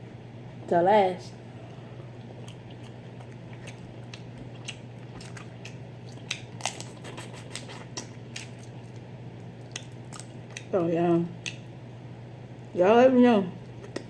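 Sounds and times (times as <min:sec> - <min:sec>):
steady low hum: 0:00.0 - 0:14.0
mouth smacking: 0:02.2 - 0:09.0.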